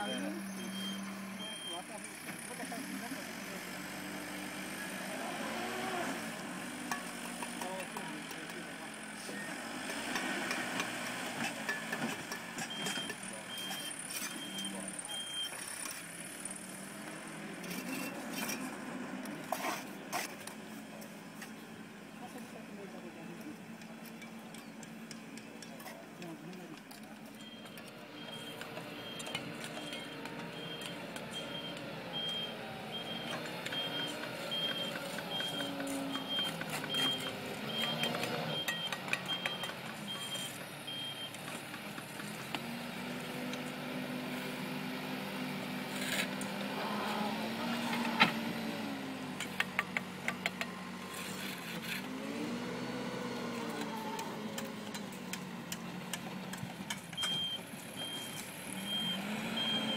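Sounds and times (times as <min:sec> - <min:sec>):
truck reversing alarm beeping: 0:00.0 - 0:02.8, 0:12.6 - 0:16.6, 0:27.2 - 0:41.6, 0:57.1 - 0:59.9
truck engine running: 0:20.4 - 0:59.9.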